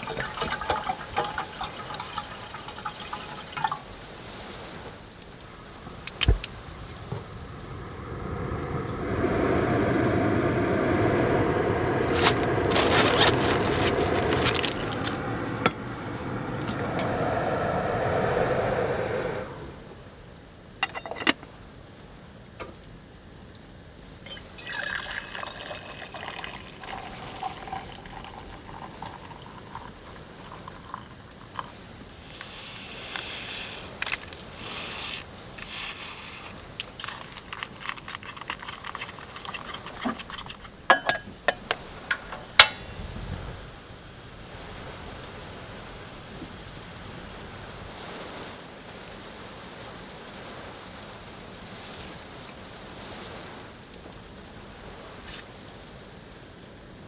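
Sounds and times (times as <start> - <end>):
liquid pouring: 0.0 - 4.2, 12.1 - 15.2, 24.3 - 42.3
clinks and handling clatter: 12.2 - 15.2, 20.8 - 21.4, 31.6 - 42.8
steady hiss: 29.9 - 38.3.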